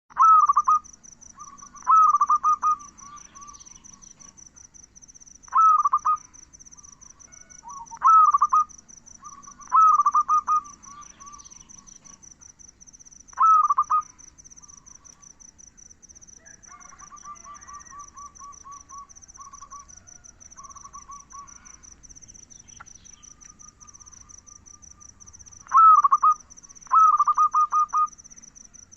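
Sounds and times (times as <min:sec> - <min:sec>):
dove cooing: 0:00.1 - 0:00.8, 0:01.4 - 0:04.4, 0:05.5 - 0:12.3, 0:13.4 - 0:15.4, 0:16.4 - 0:22.0, 0:23.3 - 0:28.2
insect pulsing trill: 0:00.1 - 0:28.9.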